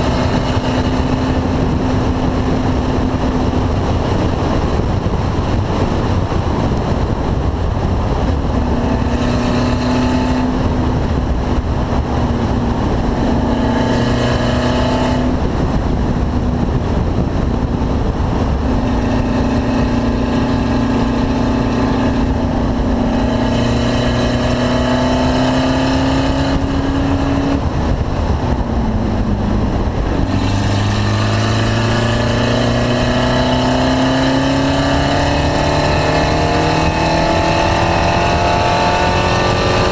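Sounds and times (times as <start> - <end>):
car engine running hard: 0.0 - 39.9
road rumble: 0.0 - 39.9
wind noise: 0.0 - 39.9.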